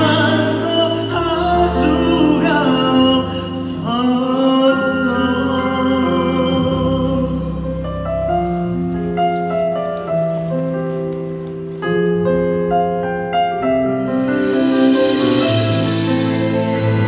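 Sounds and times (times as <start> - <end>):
keyboard playing sustained chords: 0.0 - 11.0.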